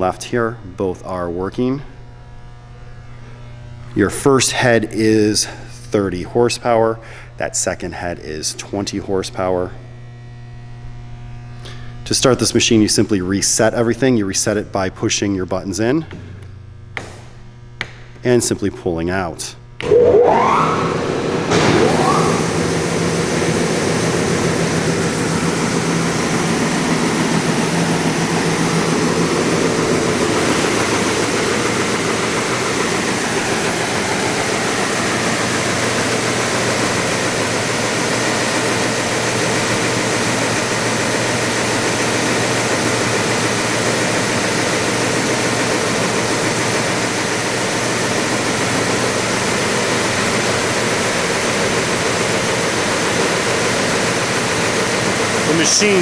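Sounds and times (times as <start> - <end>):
low hum: 19.8 - 29.4
motor spinning up whine: 19.8 - 56.0
wide belt sander running: 19.8 - 56.0.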